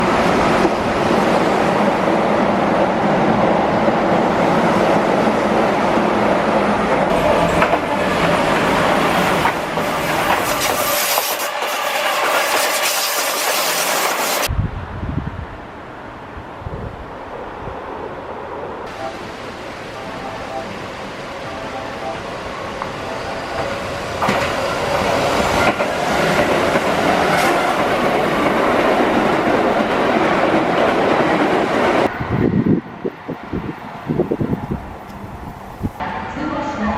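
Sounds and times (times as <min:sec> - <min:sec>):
electric train rumbling: 0:00.0 - 0:36.9
wheels clacking on rail joints: 0:06.9 - 0:14.5, 0:22.6 - 0:32.1.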